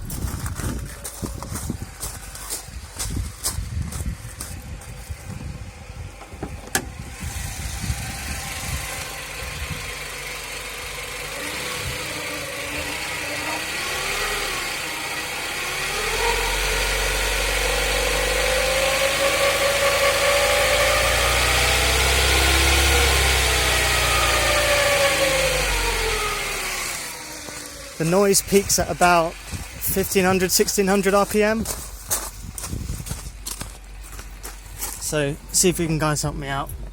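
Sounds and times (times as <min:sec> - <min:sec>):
engine whirring whine: 0:00.0 - 0:36.9.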